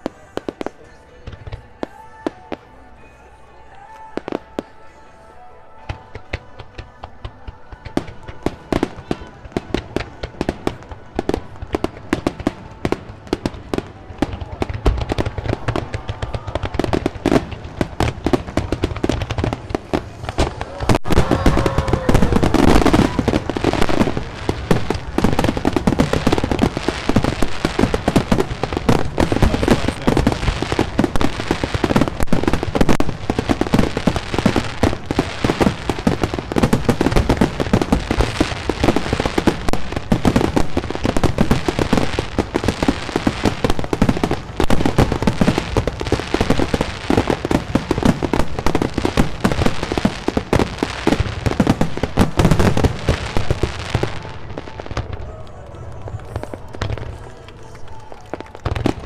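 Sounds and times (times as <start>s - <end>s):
fireworks crackling and banging: 0.0s - 59.0s
firework falling whistle: 20.4s - 31.1s.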